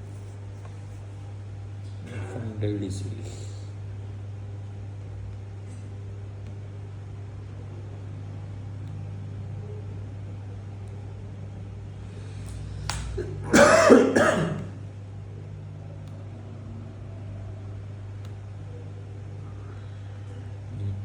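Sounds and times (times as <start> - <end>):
low room hum: 0.0 - 21.0
person coughing: 13.2 - 14.8.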